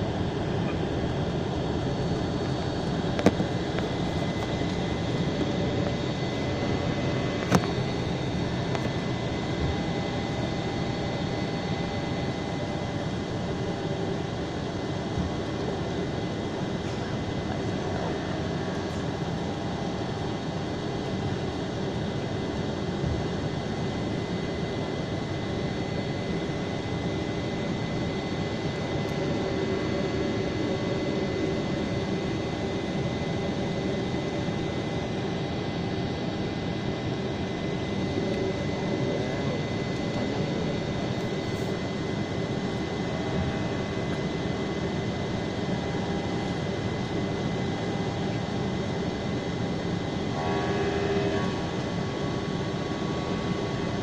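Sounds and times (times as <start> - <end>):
jet engine and airflow noise: 0.0 - 54.0
thin high whine: 24.0 - 54.0.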